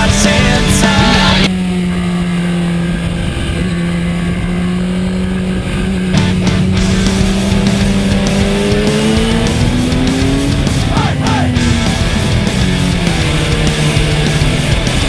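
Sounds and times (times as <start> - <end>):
rock music: 0.0 - 1.6, 6.1 - 15.0
motorcycle engine running: 0.0 - 15.0.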